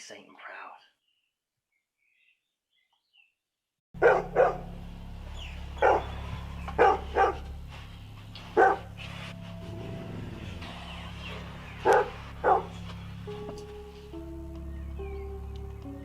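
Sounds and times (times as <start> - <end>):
dog barking: 4.0 - 4.8, 5.8 - 7.6, 8.4 - 9.1, 11.8 - 12.8
steady low hum: 4.0 - 16.0.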